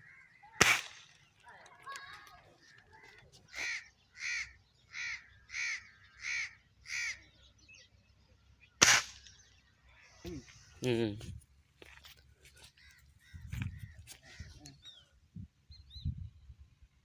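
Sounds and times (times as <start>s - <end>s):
crow cawing: 0.0s - 0.6s, 2.6s - 7.3s
sharp loud bang: 0.6s - 1.0s, 8.8s - 9.2s.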